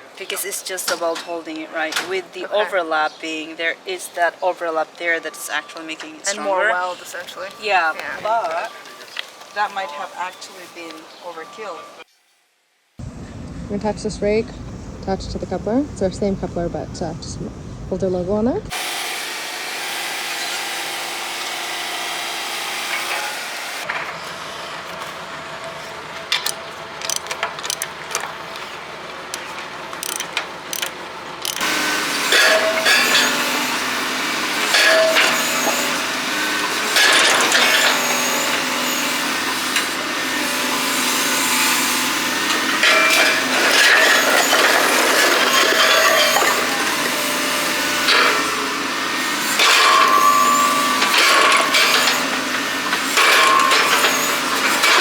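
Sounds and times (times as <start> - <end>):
excavator running: 13.0 - 55.0
rough scraping and grinding: 31.5 - 55.0
metal knocks and clanks: 49.6 - 55.0.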